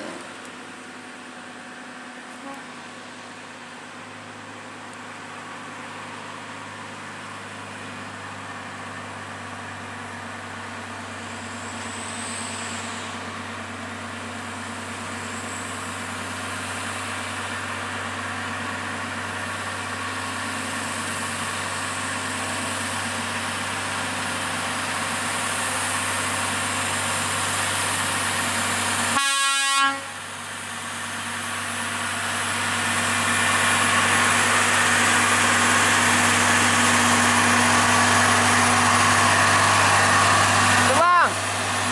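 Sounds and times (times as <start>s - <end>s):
truck horn toot: 2.4s - 2.7s, 29.2s - 30.2s
truck engine working hard: 30.2s - 41.9s.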